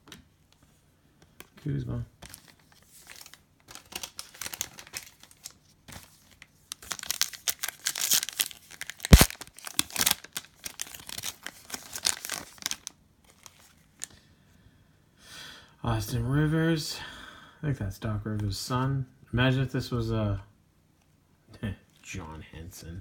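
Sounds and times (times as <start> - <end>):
plastic wrapper tearing and crinkling: 2.2 - 14.1.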